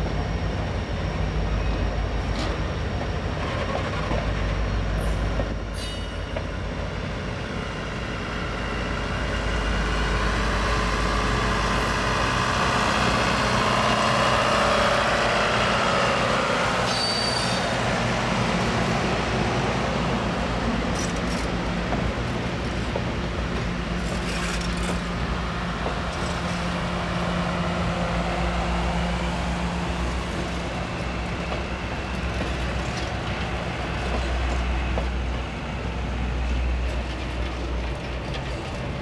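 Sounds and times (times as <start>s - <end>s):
train wheel and rail rumble: 0.0s - 39.0s
wheel squeal: 16.8s - 17.7s.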